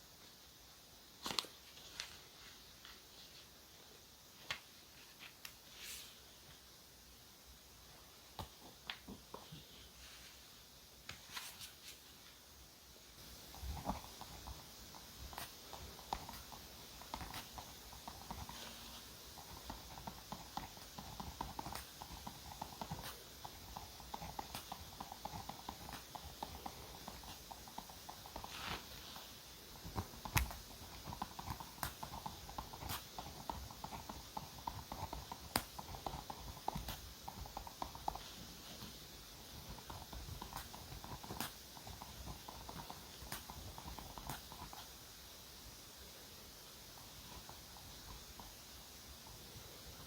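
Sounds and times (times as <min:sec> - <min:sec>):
scratchy rubbing on paper: 0:15.3 - 0:29.4.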